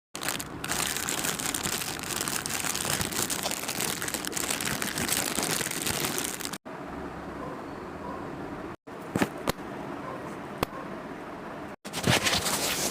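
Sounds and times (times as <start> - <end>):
packaging crinkling: 0.2 - 6.6.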